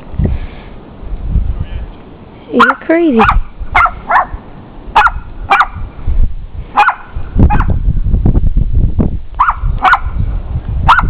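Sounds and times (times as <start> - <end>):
low rumbling noise: 0.0 - 11.0
small dog yapping: 2.6 - 4.4, 5.0 - 5.8, 6.8 - 7.7, 9.4 - 10.1.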